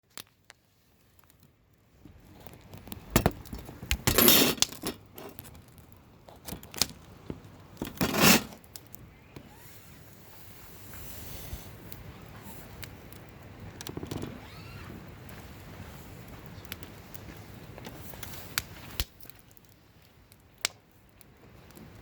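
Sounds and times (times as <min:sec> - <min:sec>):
campfire crackling and popping: 0:00.0 - 0:22.0.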